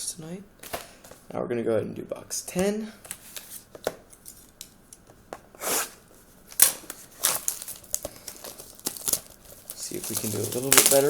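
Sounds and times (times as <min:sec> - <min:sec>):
packaging rustling tears: 0:05.6 - 0:11.0
packaging clicks: 0:06.5 - 0:11.0.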